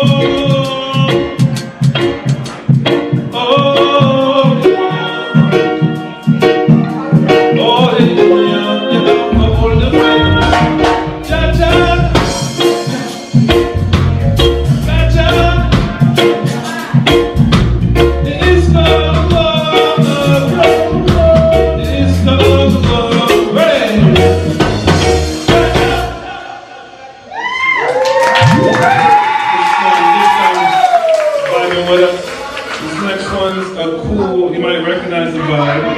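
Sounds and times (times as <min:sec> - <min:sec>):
reggae band playing: 0:00.0 - 0:35.9
heavy bass line: 0:05.4 - 0:26.4
drum kit hits: 0:09.3 - 0:26.3.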